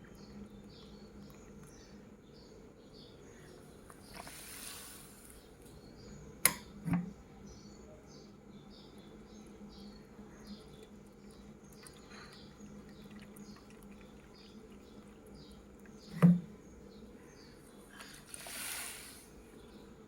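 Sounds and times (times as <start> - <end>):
brief hiss: 4.1 - 5.4, 18.3 - 19.3.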